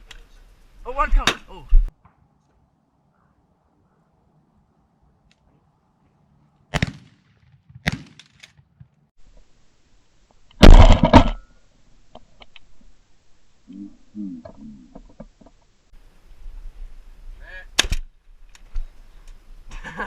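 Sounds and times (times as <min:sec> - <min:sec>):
shotgun shots: 0:06.7 - 0:08.4.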